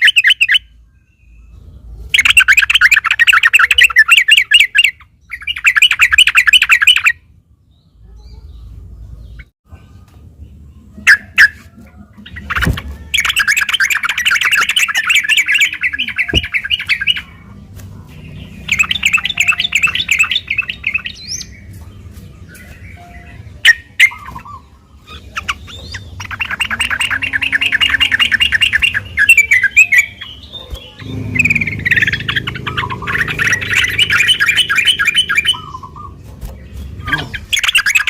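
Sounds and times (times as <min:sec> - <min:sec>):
bird chattering calls: 0:12.3 - 0:17.5, 0:18.2 - 0:21.5, 0:23.6 - 0:38.0.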